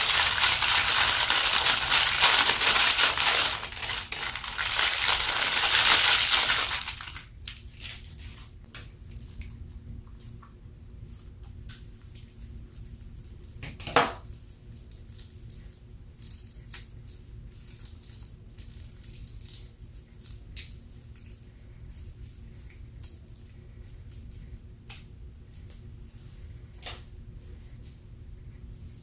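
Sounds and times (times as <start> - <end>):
slime clicking and crackling: 0.0 - 7.6
steady low hum: 0.0 - 29.0.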